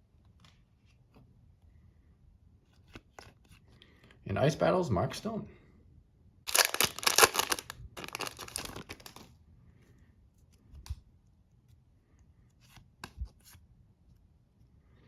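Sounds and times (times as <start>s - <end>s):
foil wrapper tearing and crinkling: 6.5s - 9.3s.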